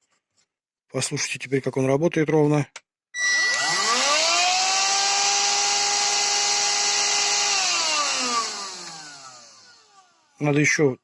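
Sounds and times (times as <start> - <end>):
vacuum cleaner motor whining: 3.2 - 10.4.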